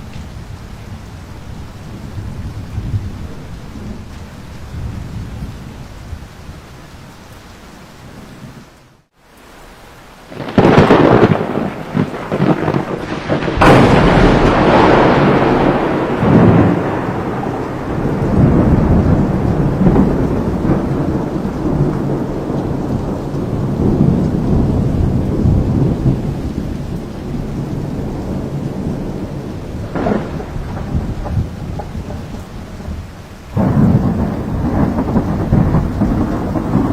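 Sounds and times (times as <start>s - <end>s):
rain hissing: 0.0s - 36.9s
thunder cracks and rumble: 10.3s - 36.9s.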